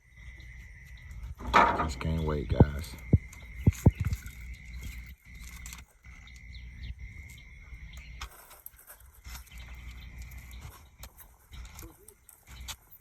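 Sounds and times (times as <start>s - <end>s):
low wind rumble: 0.1s - 5.5s
faint bird chirps: 2.0s - 8.2s, 9.2s - 13.0s.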